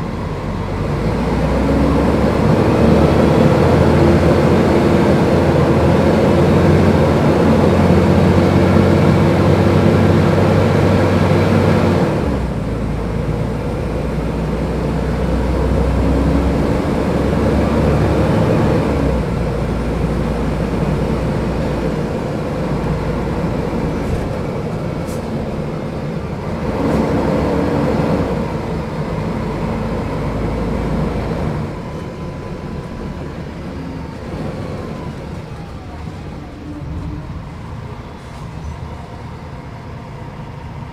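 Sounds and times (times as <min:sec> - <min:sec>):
bus diesel engine running: 0:00.0 - 0:40.9.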